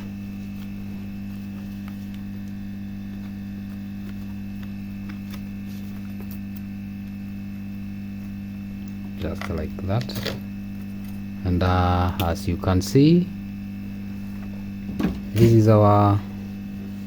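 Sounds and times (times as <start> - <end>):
electrical mains hum: 0.0 - 17.0.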